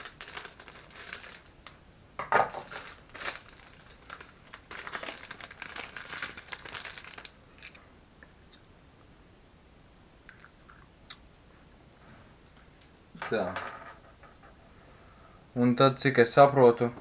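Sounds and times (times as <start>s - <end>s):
plastic packet crinkling: 0.0s - 1.8s, 2.5s - 7.8s.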